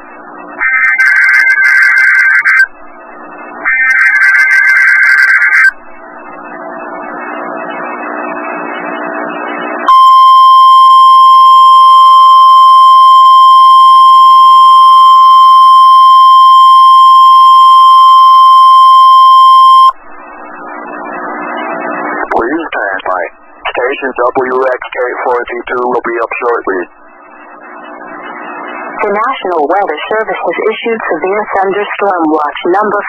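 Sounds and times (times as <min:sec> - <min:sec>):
steady alarm beep: 0:00.9 - 0:02.7, 0:03.8 - 0:05.8, 0:09.9 - 0:20.0
radio hiss: 0:19.6 - 0:33.0.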